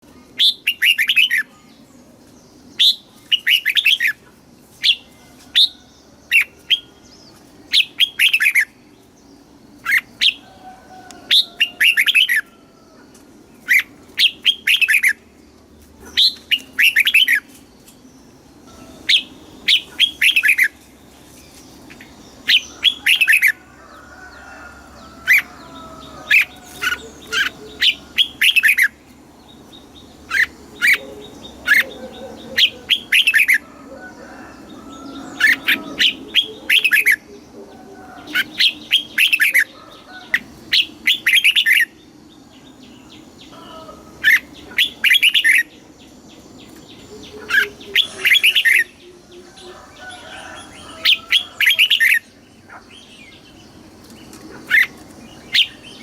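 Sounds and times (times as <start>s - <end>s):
bird singing sweeping notes: 24.9s - 56.0s.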